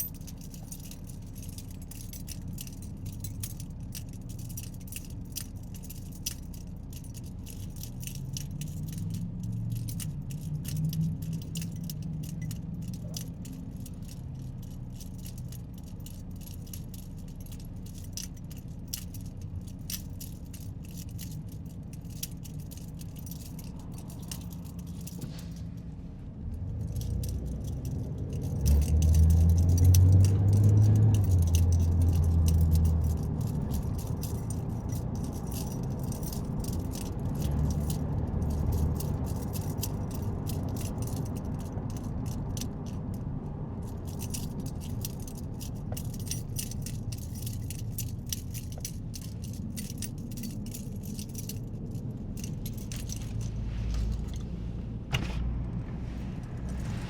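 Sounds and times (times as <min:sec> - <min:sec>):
car engine and road hum: 0:00.0 - 0:57.0
loose items rattling in car: 0:00.0 - 0:57.0
car accelerating: 0:23.2 - 0:42.0.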